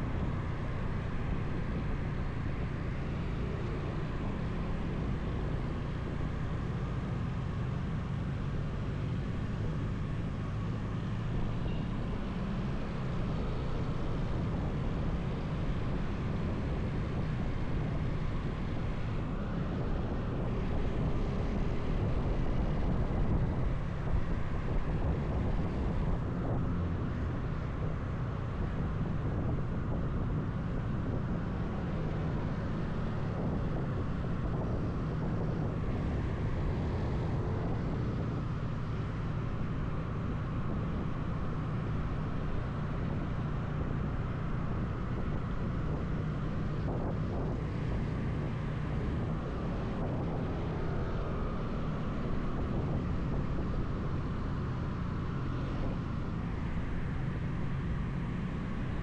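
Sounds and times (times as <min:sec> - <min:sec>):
wind noise on microphone: 0:13.8 - 0:59.0.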